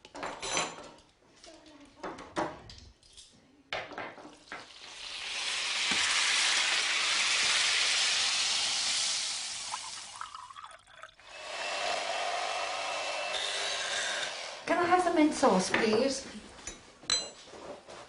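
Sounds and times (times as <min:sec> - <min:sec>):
kitchenware knocks and clicks: 0:00.0 - 0:01.1, 0:02.0 - 0:03.0, 0:03.7 - 0:04.7
food sizzling in a pan: 0:04.4 - 0:10.3.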